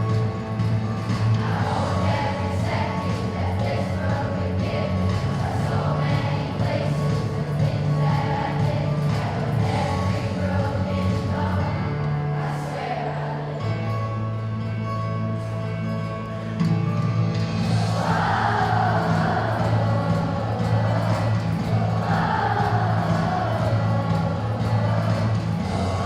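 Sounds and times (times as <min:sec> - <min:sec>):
group of voices singing: 0:00.0 - 0:13.8, 0:17.6 - 0:26.0
held bass notes: 0:00.0 - 0:26.0.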